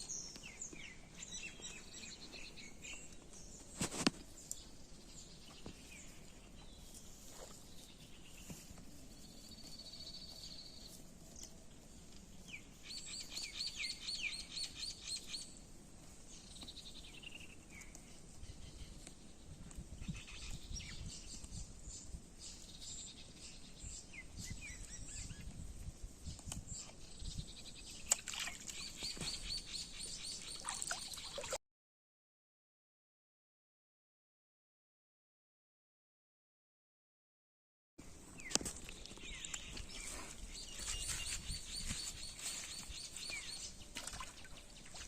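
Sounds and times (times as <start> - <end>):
birds chirping: 26.8 - 31.6, 38.3 - 45.0.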